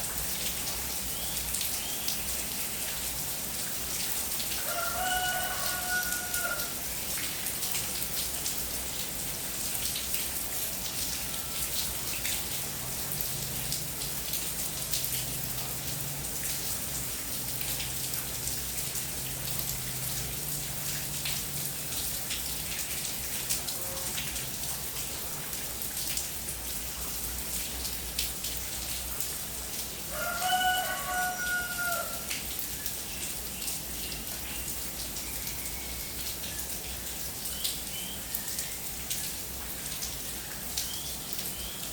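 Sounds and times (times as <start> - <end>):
steady rain falling: 0.0 - 41.9
rooster crowing: 4.6 - 6.8, 30.1 - 32.3.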